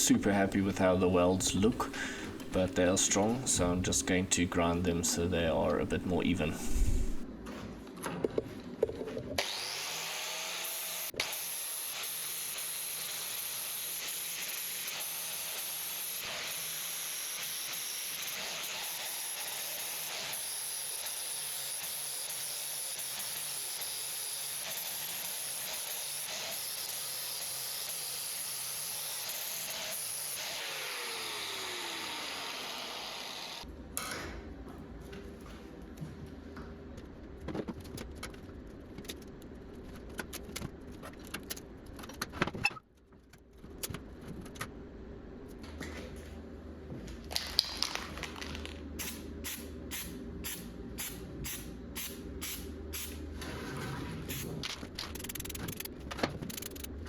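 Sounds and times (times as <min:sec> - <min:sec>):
angle grinder grinding metal: 0:24.0 - 0:33.6.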